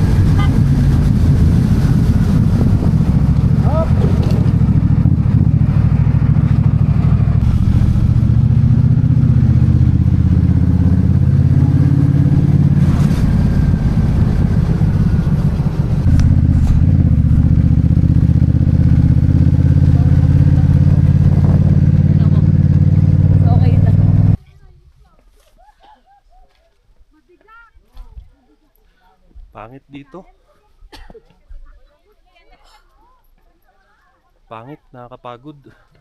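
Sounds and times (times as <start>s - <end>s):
vehicle engine running under load: 0.0s - 24.4s.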